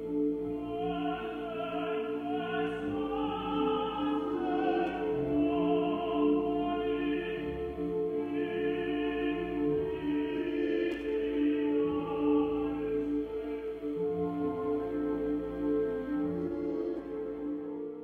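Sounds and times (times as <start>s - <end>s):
operatic singing voice: 0.0s - 17.5s.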